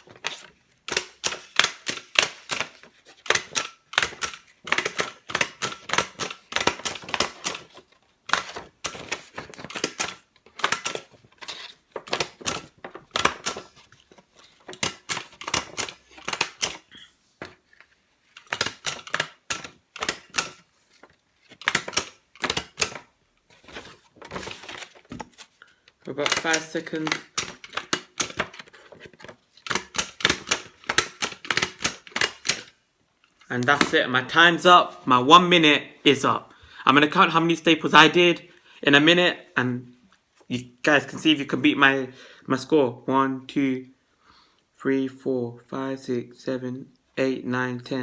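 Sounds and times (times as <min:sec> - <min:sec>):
stapler clacking: 0:00.9 - 0:11.2, 0:12.0 - 0:13.9, 0:14.6 - 0:17.0, 0:18.4 - 0:20.7, 0:21.5 - 0:23.1, 0:26.2 - 0:32.7.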